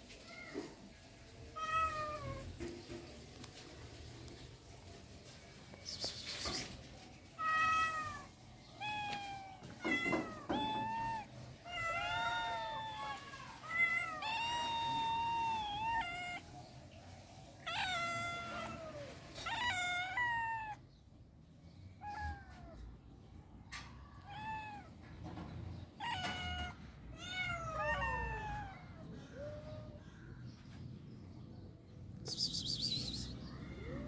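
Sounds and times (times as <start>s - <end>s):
cat meowing: 1.5s - 2.6s, 7.3s - 16.5s, 17.6s - 20.8s, 22.0s - 23.0s, 24.0s - 25.0s, 25.9s - 30.0s.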